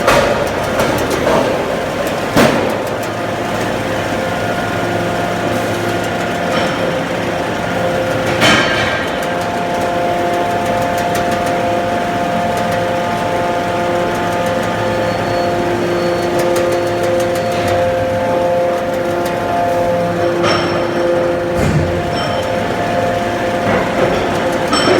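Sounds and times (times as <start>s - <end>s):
induction furnace humming: 0.0s - 24.9s
machine noise: 0.0s - 24.9s.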